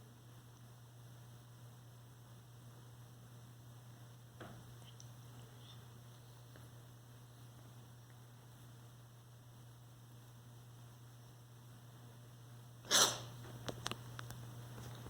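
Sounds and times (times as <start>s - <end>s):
steady low hum: 0.0s - 15.0s
person sneezing: 12.9s - 13.3s.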